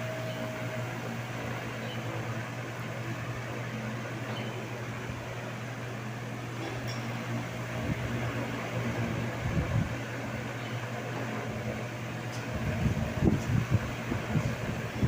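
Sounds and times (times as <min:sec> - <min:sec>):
wall fan running: 0:00.0 - 0:15.0
low gusts of air: 0:07.3 - 0:15.0.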